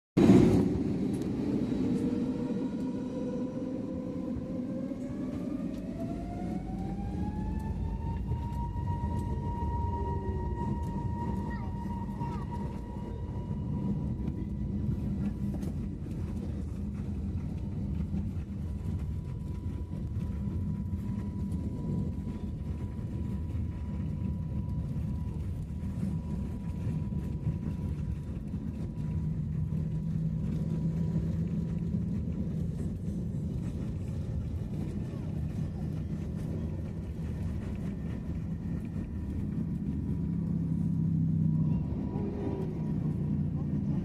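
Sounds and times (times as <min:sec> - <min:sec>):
aircraft cabin rumble: 0:00.2 - 0:44.0
faint jet engine whine: 0:00.2 - 0:44.0.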